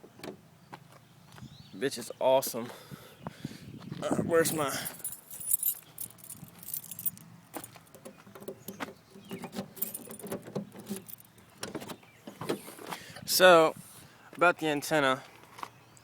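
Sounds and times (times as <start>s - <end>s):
keys jangling: 4.7s - 7.8s, 9.7s - 11.4s.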